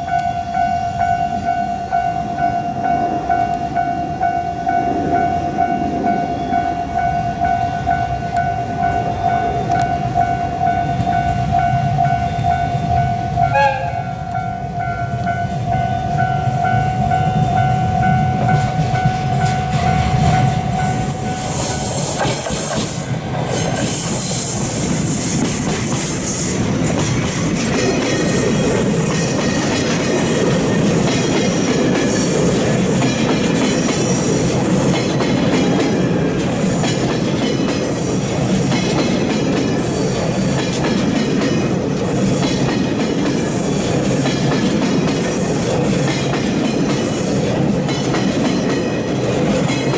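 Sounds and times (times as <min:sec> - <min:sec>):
high held tone: 0:00.0 - 0:25.0
train wheels clacking over rail joints: 0:18.4 - 0:49.9.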